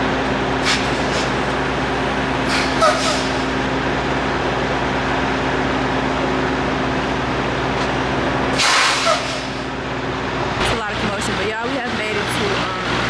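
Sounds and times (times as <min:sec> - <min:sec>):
truck engine humming: 0:00.0 - 0:13.0
air hiss: 0:00.6 - 0:01.7, 0:02.4 - 0:03.6, 0:08.6 - 0:09.7.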